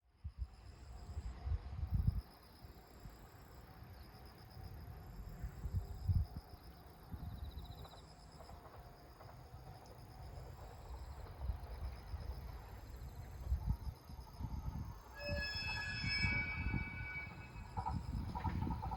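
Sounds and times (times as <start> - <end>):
insects trilling: 6.1 - 18.9.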